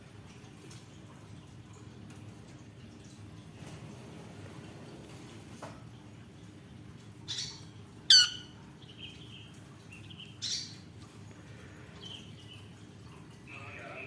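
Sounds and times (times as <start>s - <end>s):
soft bird chirps: 7.3s - 10.9s
lovebird squawking: 8.1s - 8.5s.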